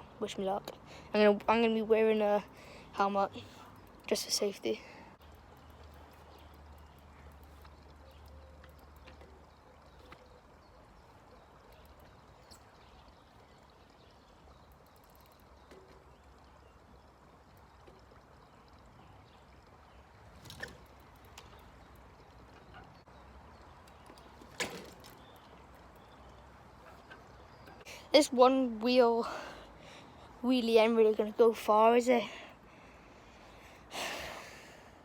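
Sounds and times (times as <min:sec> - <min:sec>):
faint outdoor background noise: 0:00.0 - 0:35.0
faint ticks: 0:05.1 - 0:22.9.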